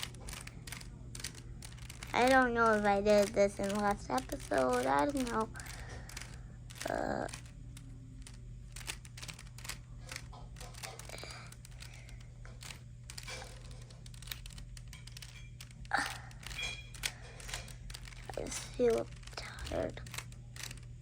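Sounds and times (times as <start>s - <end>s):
plastic cube clicking: 0.0s - 21.0s
steady low hum: 0.0s - 21.0s.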